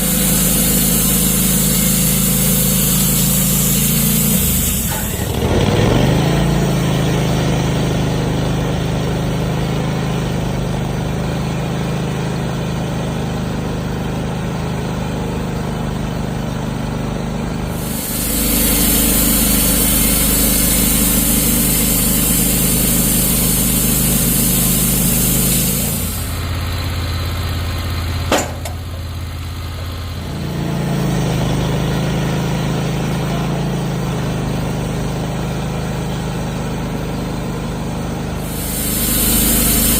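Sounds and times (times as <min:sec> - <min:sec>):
bandsaw mill cutting log: 0:00.0 - 0:08.6, 0:17.6 - 0:26.7, 0:38.3 - 0:39.9
sharp knock: 0:28.3 - 0:28.9.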